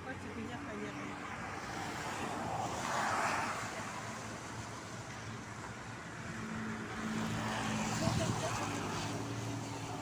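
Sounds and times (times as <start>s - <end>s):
road traffic: 0.0s - 10.0s
vehicle passing: 6.0s - 10.0s.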